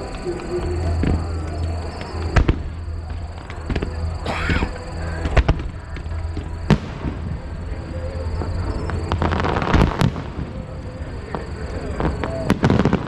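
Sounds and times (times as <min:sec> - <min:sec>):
fireworks booming: 0:00.0 - 0:13.0
fireworks crackling: 0:00.0 - 0:13.0.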